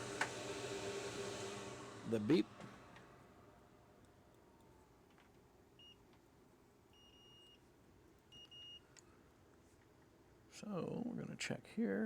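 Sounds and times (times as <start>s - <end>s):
faint multimeter beeps: 5.8s - 6.1s, 6.9s - 7.7s, 8.3s - 9.0s.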